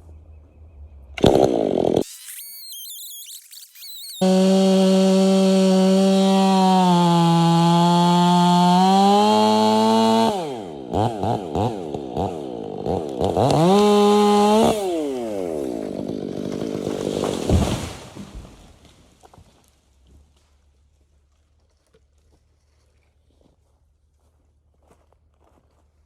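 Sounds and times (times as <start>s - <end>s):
chainsaw revving: 1.2s - 2.7s, 3.5s - 18.2s.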